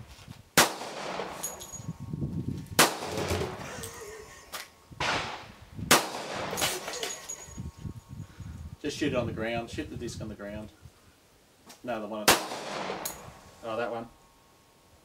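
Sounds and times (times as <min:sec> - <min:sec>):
pistol shots with echo: 0:00.6 - 0:01.6, 0:02.8 - 0:03.6, 0:05.0 - 0:06.9, 0:12.3 - 0:13.3.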